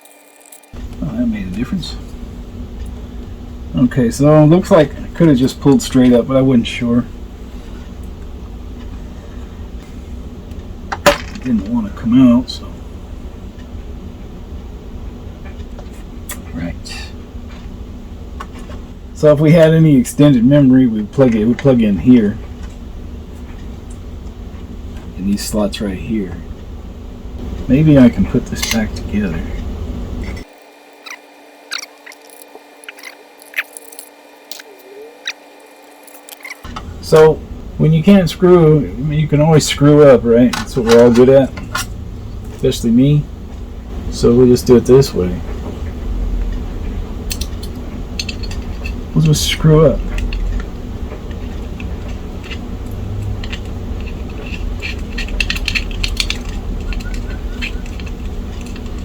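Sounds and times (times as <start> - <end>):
small parts and screws clicking: 0.0 - 0.8, 30.2 - 36.7, 47.3 - 49.4, 50.0 - 59.0.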